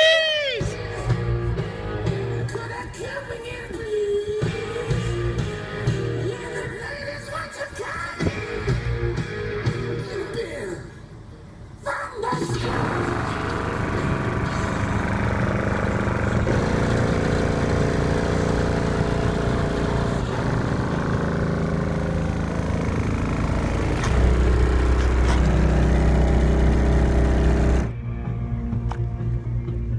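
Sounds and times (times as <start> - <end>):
heavy bass notes from subwoofers: 8.3 - 10.1, 12.5 - 29.9.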